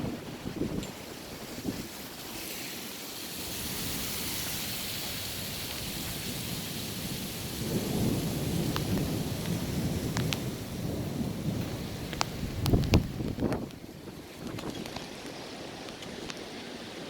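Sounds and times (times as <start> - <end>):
steady rain: 0.0 - 17.0
deep thunder rumble: 5.4 - 14.7.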